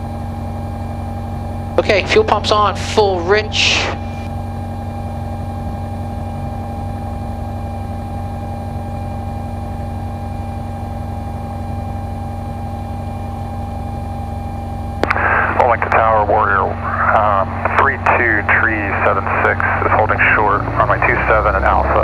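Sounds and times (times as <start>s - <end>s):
light aircraft engine drone: 0.0s - 22.0s.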